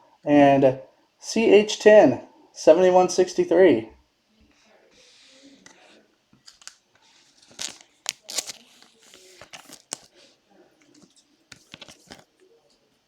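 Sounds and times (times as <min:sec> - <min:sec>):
cards and foil packaging rustling: 0:06.4 - 0:12.4.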